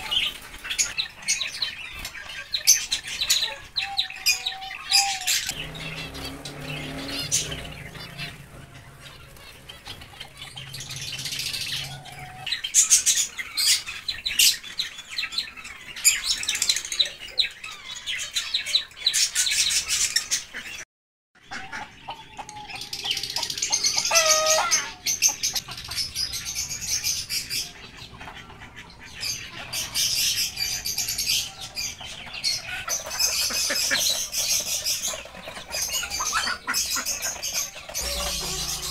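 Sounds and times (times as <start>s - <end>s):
small birds chirping: 0.0s - 20.8s, 21.5s - 38.9s
loud bird call: 3.3s - 13.2s, 22.8s - 25.7s, 35.7s - 38.9s.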